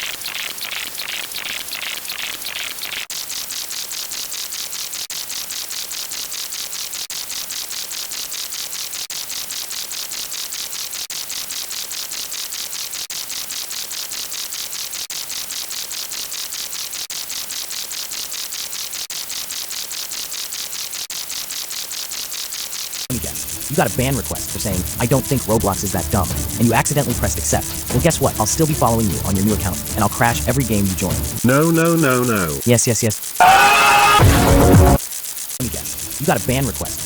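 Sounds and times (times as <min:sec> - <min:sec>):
pulsing static-like hiss: 0:23.1 - 0:37.0.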